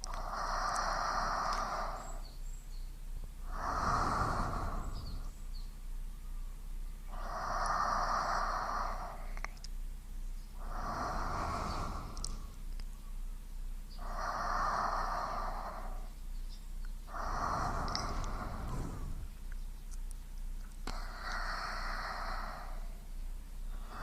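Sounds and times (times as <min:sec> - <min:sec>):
person breathing slowly: 0:00.0 - 0:02.6, 0:03.4 - 0:05.7, 0:07.0 - 0:09.5, 0:10.6 - 0:12.9, 0:14.0 - 0:16.3, 0:17.0 - 0:19.6, 0:20.8 - 0:24.0
steady low hum: 0:00.0 - 0:24.0.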